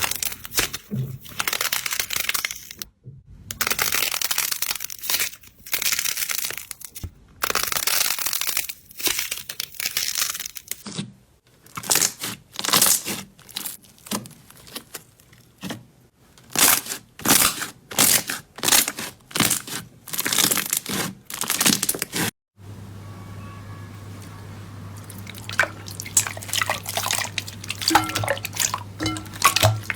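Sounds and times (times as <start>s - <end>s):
faint steady hum: 22.6s - 29.9s.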